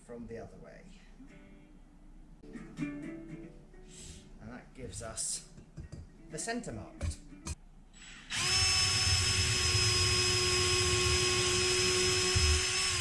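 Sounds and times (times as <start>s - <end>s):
power drill running: 8.0s - 13.0s.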